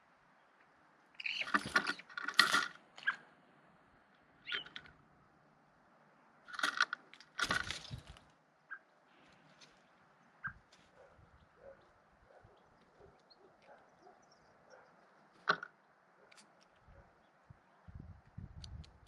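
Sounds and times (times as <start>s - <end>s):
jay scratchy calls: 1.2s - 2.1s, 4.4s - 4.9s.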